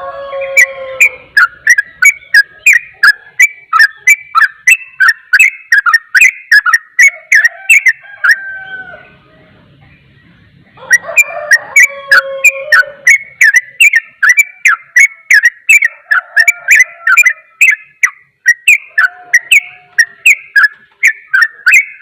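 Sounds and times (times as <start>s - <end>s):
bird singing whistled notes: 0.4s - 8.4s, 10.0s - 22.0s.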